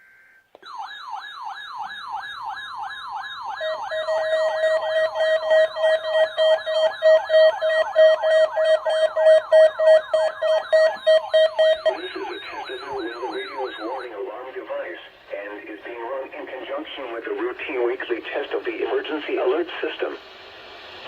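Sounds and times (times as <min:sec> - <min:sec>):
siren-like alarm sweeping: 0:00.6 - 0:14.4
pulsing beep: 0:03.6 - 0:14.2.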